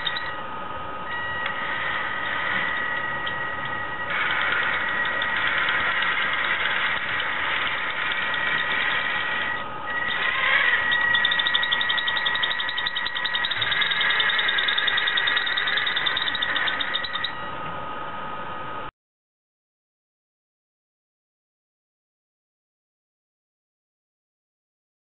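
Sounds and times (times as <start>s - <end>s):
drivetrain high-pitched whine: 0.0s - 18.9s
fast ticking rattle: 4.1s - 17.4s.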